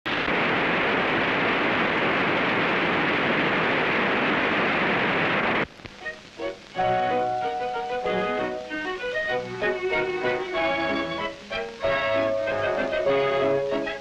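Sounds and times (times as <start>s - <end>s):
loud film soundtrack hiss: 0.1s - 14.0s
faint musical notes: 5.9s - 14.0s.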